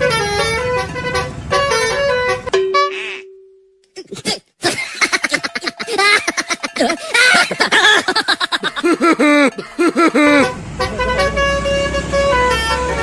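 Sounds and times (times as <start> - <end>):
sped-up voice laughing and chattering: 4.8 - 10.5.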